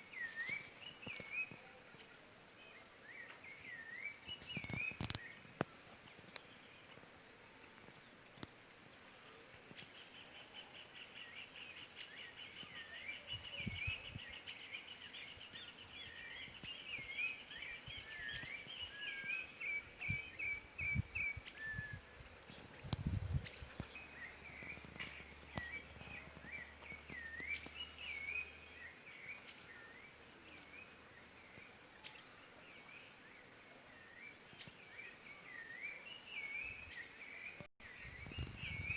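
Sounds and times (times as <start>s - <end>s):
thrush singing whistled notes: 10.2s - 30.0s.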